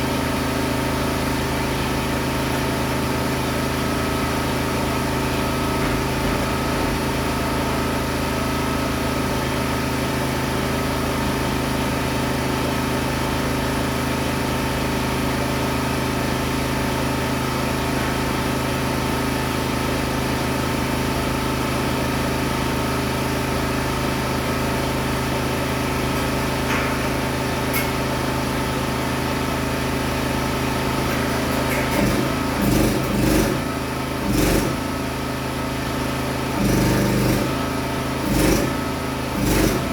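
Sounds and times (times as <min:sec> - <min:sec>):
engine idling: 0:23.9 - 0:39.9.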